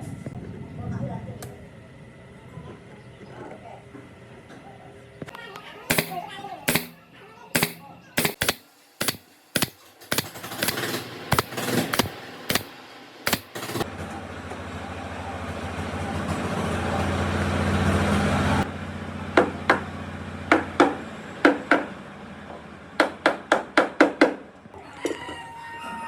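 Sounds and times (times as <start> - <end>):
sharp knocks: 5.9 - 7.0, 7.6 - 12.7, 13.3 - 13.8
small electric power tool running: 5.9 - 7.0, 7.6 - 12.7, 13.3 - 13.8.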